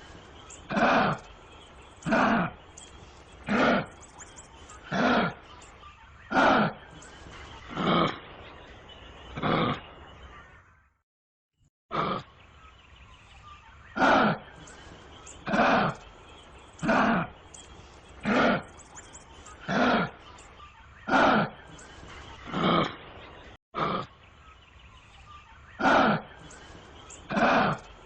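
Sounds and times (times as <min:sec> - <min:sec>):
kangaroo short harsh calls: 0:00.6 - 0:01.2, 0:25.8 - 0:26.3.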